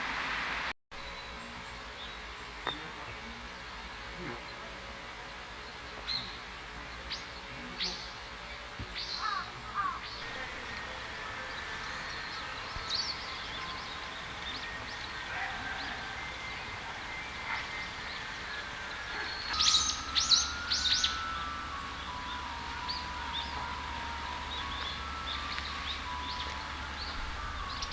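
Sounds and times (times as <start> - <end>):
small bird high calls: 9.0 - 27.9.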